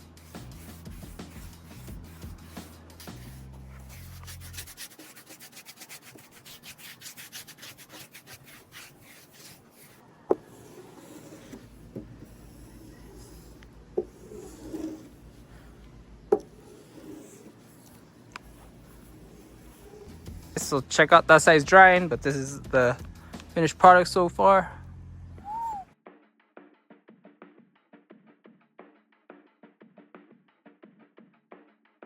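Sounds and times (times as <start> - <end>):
rubbing strokes on wood: 0.0 - 15.7, 16.4 - 20.8.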